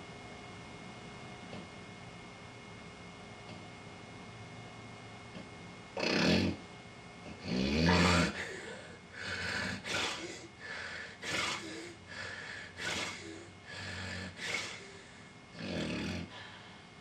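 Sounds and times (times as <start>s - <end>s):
loud snore-snort: 6.0s - 6.6s, 7.4s - 8.4s, 9.2s - 10.4s, 11.2s - 12.0s, 12.8s - 16.3s
person snoring and gasping: 6.0s - 6.6s, 7.4s - 16.5s.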